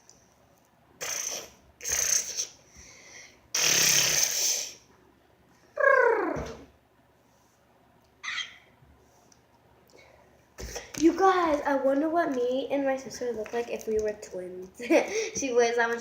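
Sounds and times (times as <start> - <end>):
hissing bursts of breath: 1.0 - 4.8
short falling voiced sound: 5.8 - 6.7.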